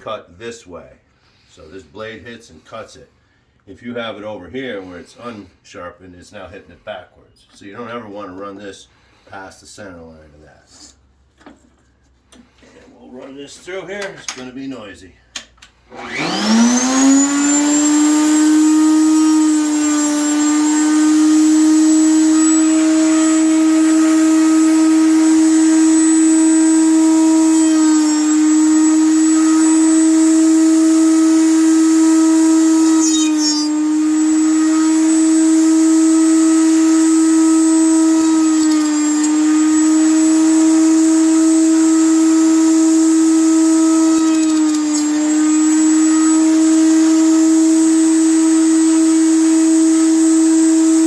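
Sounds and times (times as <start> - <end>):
router motor whining: 15.9 - 51.0.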